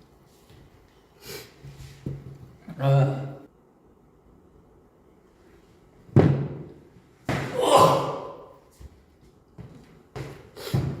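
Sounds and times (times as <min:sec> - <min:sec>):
soft breaths or sniffs: 0:01.2 - 0:01.6
man sneezing: 0:07.5 - 0:08.5.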